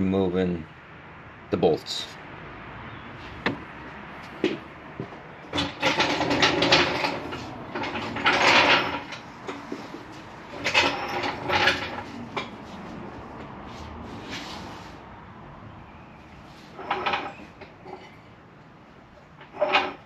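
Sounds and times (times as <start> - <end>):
sharp knocks: 3.4 - 3.7
floor jack scraping: 5.5 - 13.0, 19.4 - 20.0.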